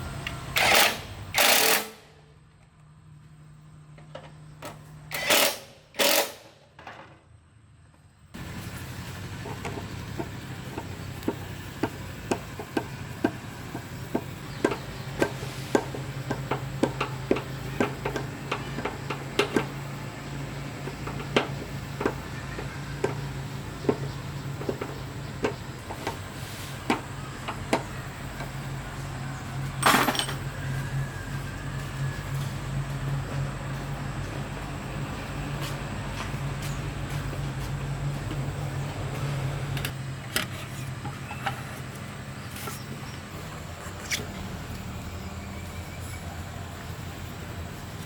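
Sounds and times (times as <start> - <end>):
hand tools tapping on metal: 9.4 - 26.3.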